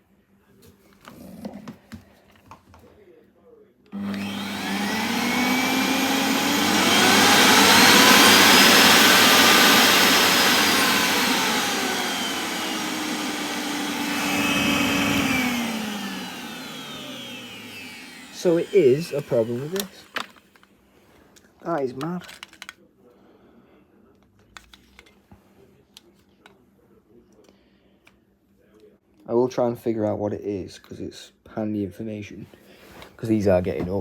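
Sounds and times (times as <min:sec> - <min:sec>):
vacuum cleaner motor: 0:04.0 - 0:20.6.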